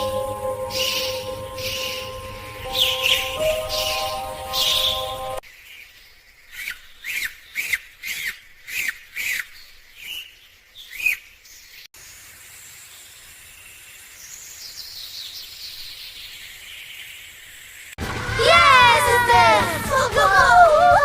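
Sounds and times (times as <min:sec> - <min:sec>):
bird chirping: 0:00.0 - 0:11.9.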